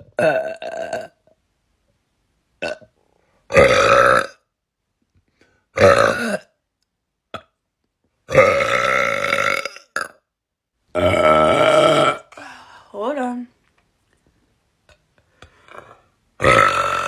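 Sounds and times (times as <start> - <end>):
person belching: 0.0 - 1.2, 2.6 - 2.9, 3.5 - 4.4, 5.8 - 6.6, 8.3 - 10.3, 10.9 - 12.4, 15.7 - 17.0.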